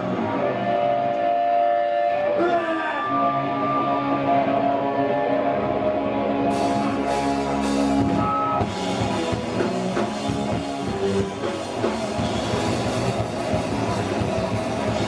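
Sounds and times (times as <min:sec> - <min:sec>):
distorted electric guitar: 0:00.0 - 0:15.0
fast drumming: 0:07.8 - 0:15.0.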